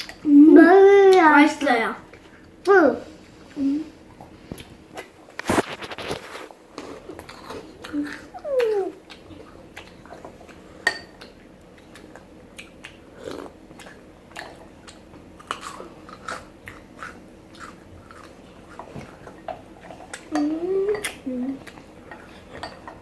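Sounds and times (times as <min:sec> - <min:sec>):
chewing and crunching chocolate: 0:04.5 - 0:22.8.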